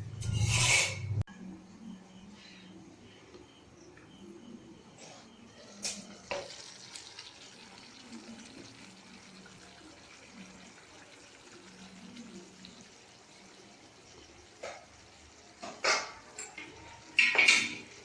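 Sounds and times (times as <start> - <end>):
curry sizzling in a pan: 6.1 - 18.0.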